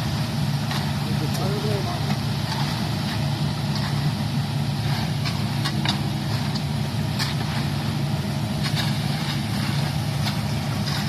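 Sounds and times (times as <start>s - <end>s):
engine running steadily: 0.0s - 11.0s
knocks and scrapes: 0.6s - 11.0s.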